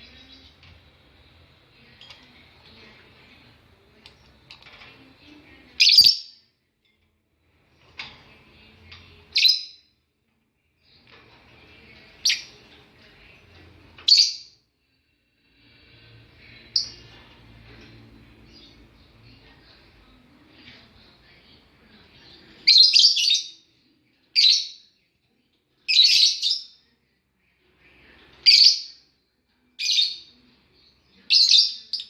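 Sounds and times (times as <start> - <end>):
lovebirds chirping: 0.0 - 6.5.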